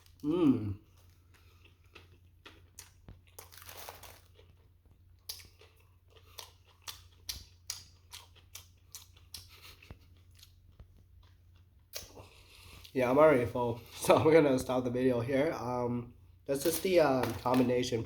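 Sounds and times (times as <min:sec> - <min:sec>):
chewing crusty sandwich: 0:00.0 - 0:13.0.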